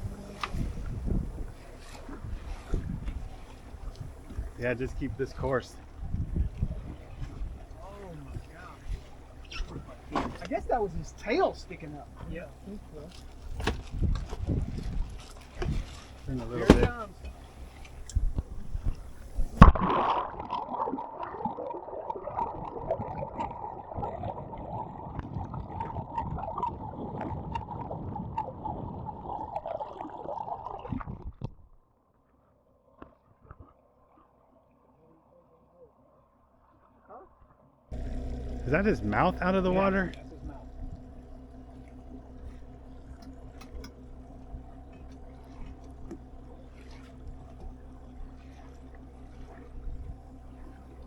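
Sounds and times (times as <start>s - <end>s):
boat engine running: 0.0s - 19.8s, 37.9s - 51.0s
water gurgling and sloshing: 0.0s - 31.4s, 37.9s - 51.0s
loud thump: 13.5s - 14.6s, 16.6s - 17.1s.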